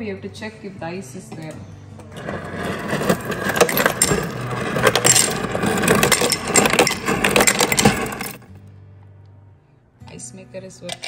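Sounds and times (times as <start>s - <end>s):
ice cubes clattering from ice maker: 2.2s - 8.4s.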